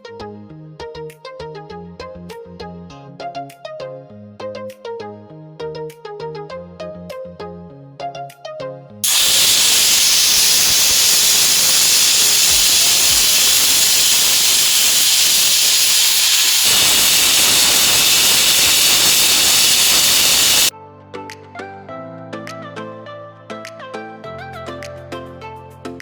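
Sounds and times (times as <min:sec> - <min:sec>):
loud hiss of escaping steam: 0:09.0 - 0:20.7.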